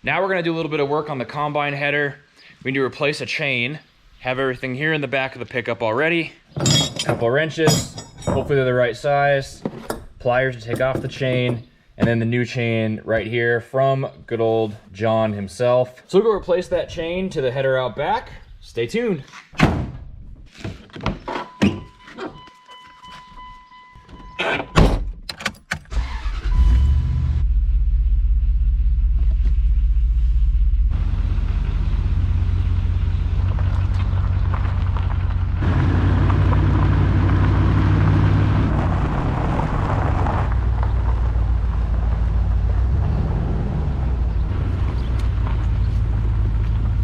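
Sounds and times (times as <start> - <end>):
truck engine starting and running: 24.1 - 47.0.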